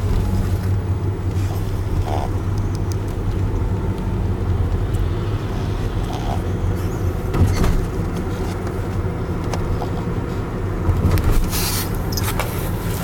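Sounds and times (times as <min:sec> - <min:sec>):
car road noise rumble: 0:00.0 - 0:13.0
puppy snoring: 0:01.3 - 0:02.9, 0:05.5 - 0:07.2.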